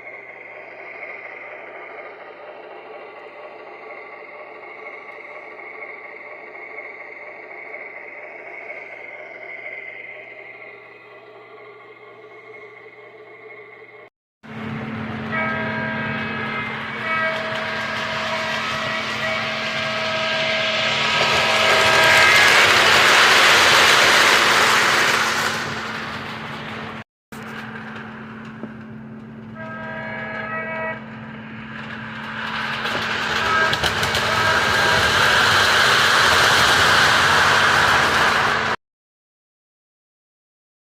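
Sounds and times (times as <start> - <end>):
locomotive engine hum: 0.0 - 38.8
locomotive horn blasts: 15.2 - 22.7, 29.6 - 31.1, 33.2 - 35.3.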